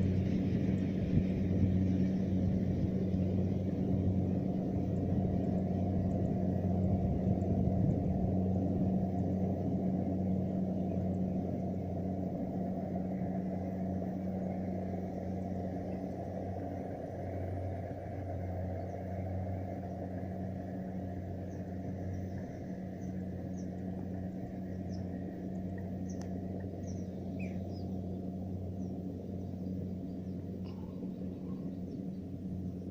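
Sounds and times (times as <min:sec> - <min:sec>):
combine harvester engine hum: 0:00.0 - 0:32.9
faint bird chirps: 0:26.0 - 0:32.9.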